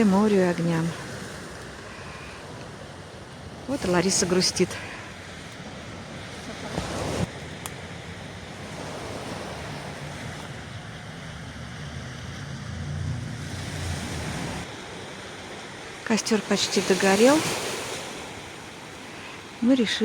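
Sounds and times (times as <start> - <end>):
surf washing onto shore: 0.0 - 19.7
wind rumbling on microphone: 5.3 - 14.8.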